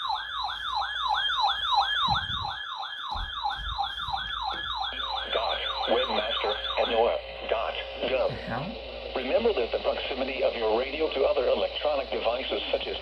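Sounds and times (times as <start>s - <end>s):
falling whoop alert siren: 0.0s - 7.1s
lower sweeping alarm tone: 0.0s - 12.8s.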